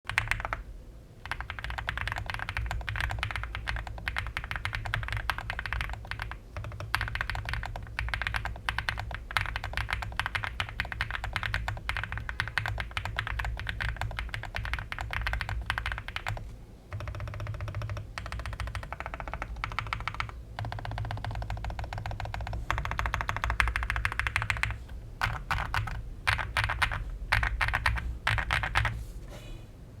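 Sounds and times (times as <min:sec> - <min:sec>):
mechanical keyboard typing: 0:00.1 - 0:00.6, 0:01.2 - 0:29.0.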